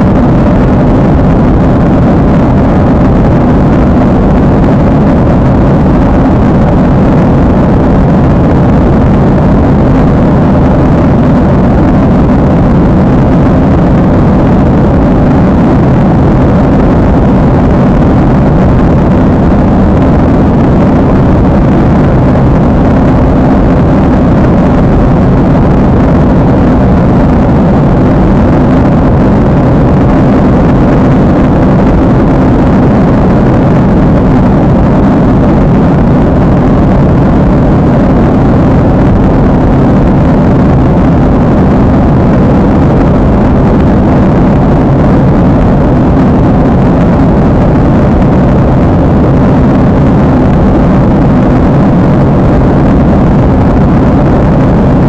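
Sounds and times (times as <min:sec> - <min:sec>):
jet engine and airflow roar: 0:00.0 - 0:55.0.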